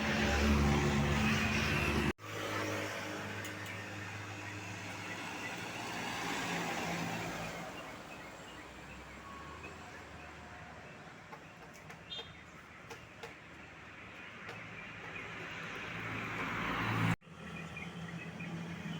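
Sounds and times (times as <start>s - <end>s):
bus engine passing: 0.0s - 10.2s.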